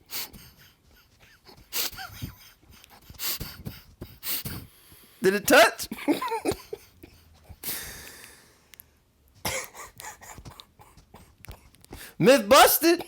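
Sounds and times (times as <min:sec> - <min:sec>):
person coughing: 0:05.2 - 0:06.8, 0:09.4 - 0:11.3, 0:12.0 - 0:13.0.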